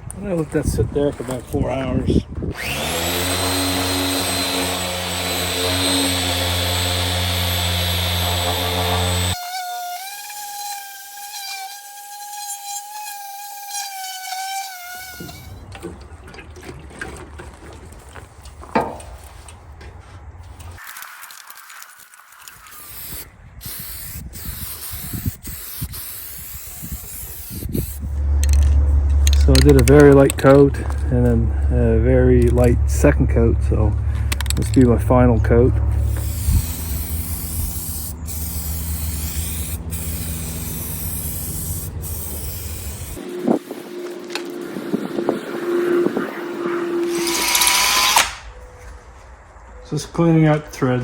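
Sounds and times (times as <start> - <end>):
paint spray hissing: 22.4 - 28.6, 36.0 - 44.8
low hum: 27.6 - 50.8.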